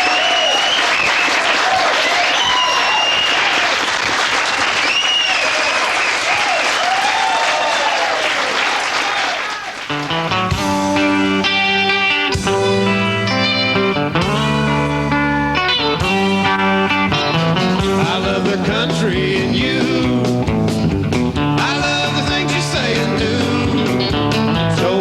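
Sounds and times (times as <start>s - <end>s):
whistles and cheers: 0.0s - 10.0s
audience applauding: 0.0s - 10.4s
country band on guitars: 9.6s - 25.0s.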